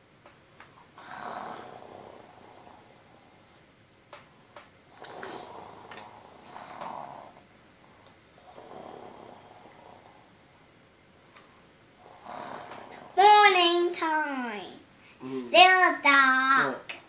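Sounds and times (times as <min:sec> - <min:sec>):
toddler pretend snoring: 0:01.0 - 0:03.4, 0:04.9 - 0:07.4, 0:08.4 - 0:10.3, 0:12.0 - 0:13.5.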